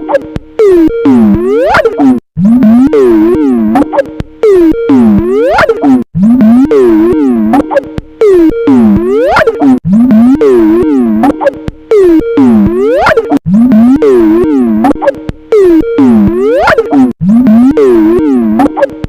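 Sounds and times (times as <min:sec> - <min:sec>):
warped warbling ringtone: 0:00.0 - 0:19.0.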